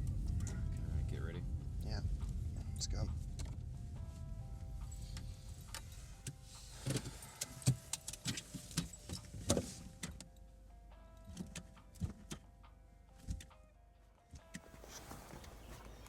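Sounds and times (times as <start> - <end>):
sustained music notes: 0.0 - 8.4
car engine humming: 0.0 - 12.4, 14.4 - 16.0.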